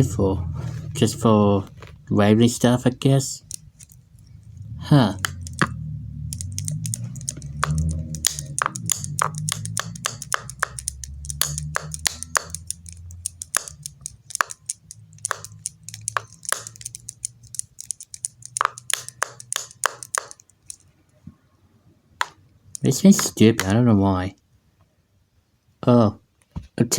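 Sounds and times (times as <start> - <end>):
low hum: 3.4 - 20.8
sharp clicks on hard object: 5.2 - 20.8, 22.2 - 23.8.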